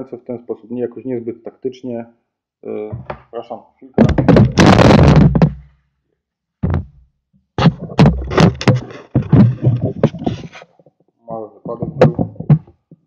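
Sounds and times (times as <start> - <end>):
knocks and thuds: 2.9 - 3.3, 4.0 - 5.7, 6.6 - 7.0, 7.6 - 10.6, 11.7 - 13.0
rustling handling noise: 7.6 - 10.6.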